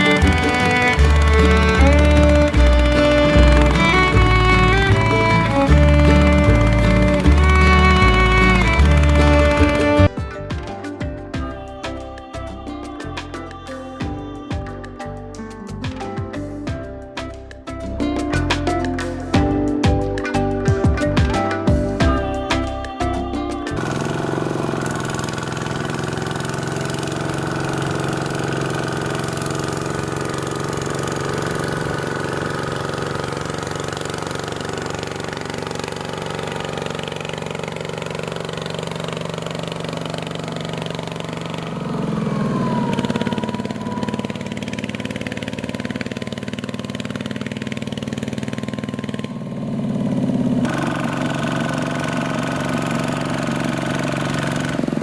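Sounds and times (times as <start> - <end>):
small diesel engine running: 0.0 - 10.2, 23.7 - 55.0.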